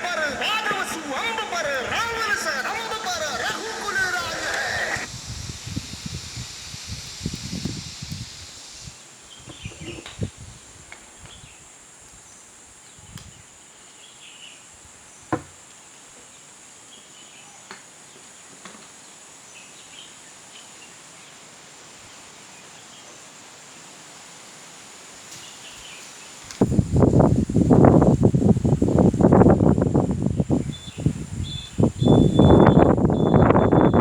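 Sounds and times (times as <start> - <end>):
thin high whine: 0.0 - 9.0
faint background hiss: 0.0 - 32.0.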